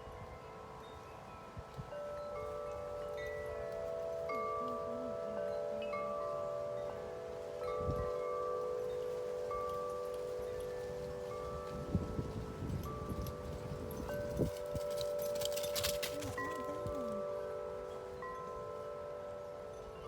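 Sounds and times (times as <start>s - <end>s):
wind chimes ringing: 0.0s - 20.0s
wind gusts buffeting microphone: 7.4s - 17.6s.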